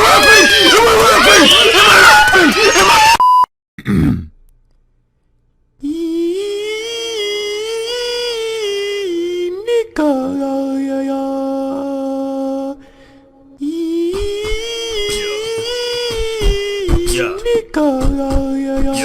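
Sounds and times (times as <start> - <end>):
person humming: 5.8 - 12.8, 13.6 - 19.0.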